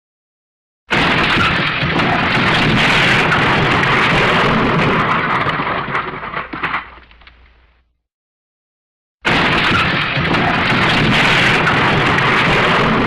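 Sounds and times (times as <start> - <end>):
rumbling crash of breaking debris: 0.9 - 7.5, 9.3 - 13.0.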